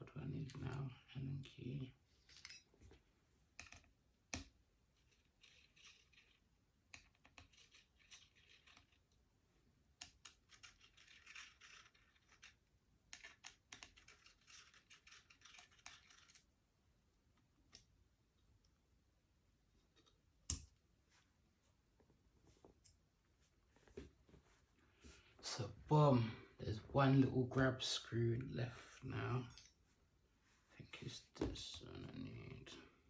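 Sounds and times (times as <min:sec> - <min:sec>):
allen key clicking and scraping: 0:05.0 - 0:09.1, 0:10.0 - 0:16.5.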